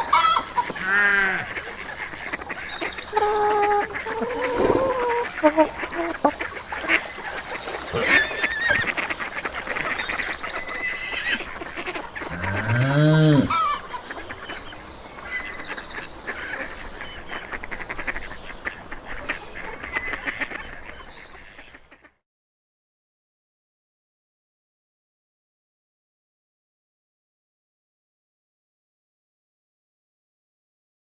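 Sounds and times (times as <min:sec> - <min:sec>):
geese honking: 0:00.0 - 0:15.4
small birds chirping: 0:00.0 - 0:21.8
ducks quacking: 0:00.0 - 0:22.1
long low animal call: 0:03.0 - 0:06.5, 0:07.1 - 0:10.0, 0:12.2 - 0:13.9.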